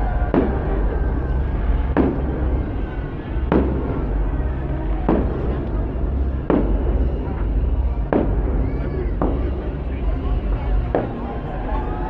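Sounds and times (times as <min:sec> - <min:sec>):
fireworks bursting: 0:00.0 - 0:04.3, 0:05.0 - 0:07.2, 0:08.0 - 0:09.7
steady low rumble: 0:00.0 - 0:12.0.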